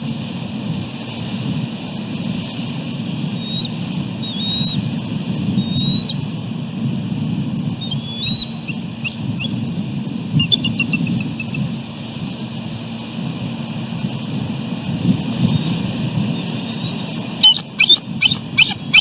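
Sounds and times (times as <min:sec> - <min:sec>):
wind rumble on microphone: 0:00.0 - 0:19.0
eagle whistled calls and chirps: 0:03.3 - 0:06.6, 0:07.7 - 0:11.7, 0:15.3 - 0:19.0.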